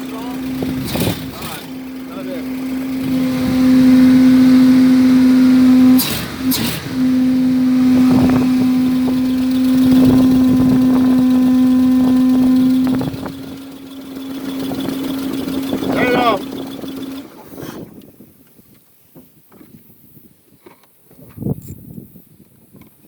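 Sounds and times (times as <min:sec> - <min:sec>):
engine at high revs: 0:00.0 - 0:17.9.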